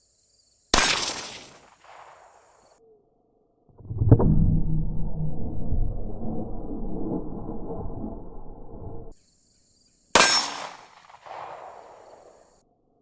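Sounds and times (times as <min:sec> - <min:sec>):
rifle shot: 0:00.8 - 0:02.4, 0:10.2 - 0:12.4
loud low rushing rumble: 0:03.7 - 0:09.1.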